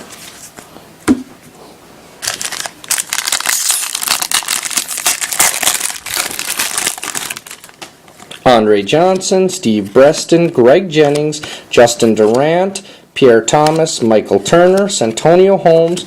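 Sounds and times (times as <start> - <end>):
plastic wrapper crinkling: 2.2 - 8.4.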